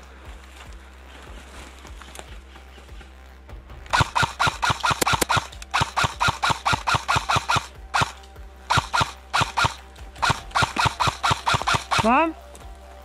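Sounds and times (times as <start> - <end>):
airsoft gun firing full auto: 3.9 - 12.1.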